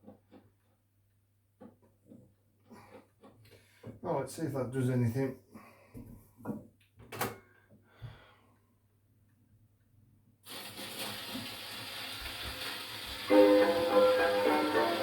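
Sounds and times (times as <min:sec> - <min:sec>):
gramophone record surface hiss: 0:10.5 - 0:15.0.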